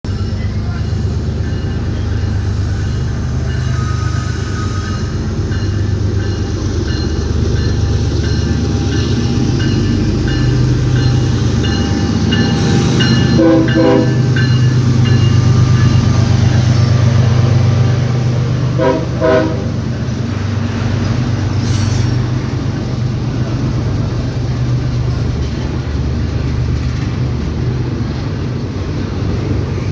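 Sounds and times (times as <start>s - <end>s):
diesel locomotive rumble: 0.0s - 29.9s
locomotive horn blasts: 13.2s - 14.3s, 18.7s - 19.8s.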